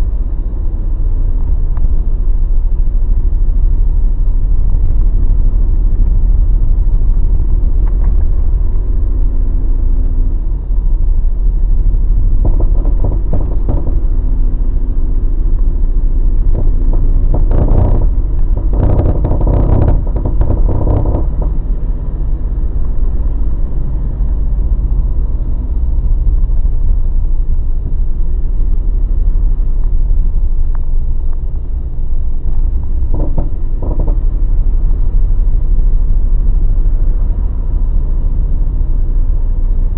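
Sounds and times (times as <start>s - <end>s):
truck driving rumble: 0.0s - 39.9s
rapid clunking and cracking: 12.1s - 14.4s, 16.4s - 21.9s, 32.6s - 35.6s.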